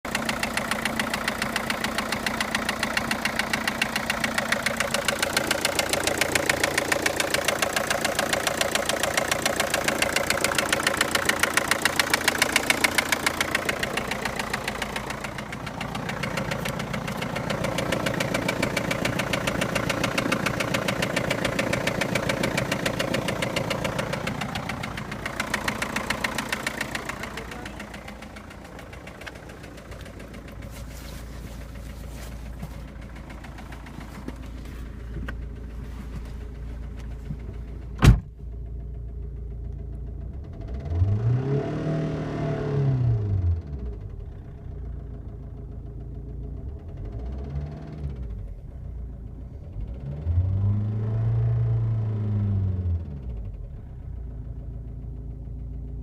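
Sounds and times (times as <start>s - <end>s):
diesel engine knocking: 0.0s - 41.5s, 43.1s - 50.3s.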